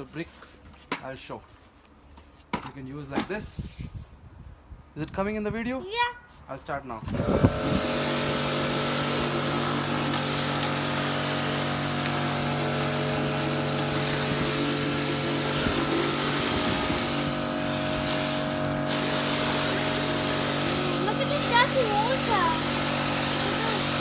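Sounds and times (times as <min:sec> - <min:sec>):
high-pressure water jet hissing: 0:07.1 - 0:24.0
pressure washer motor humming: 0:07.1 - 0:24.0.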